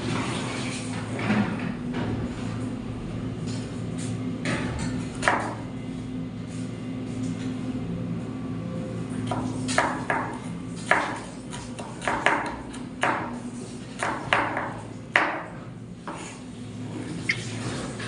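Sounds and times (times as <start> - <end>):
knife chopping on cutting board: 9.3 - 13.4, 14.0 - 16.4.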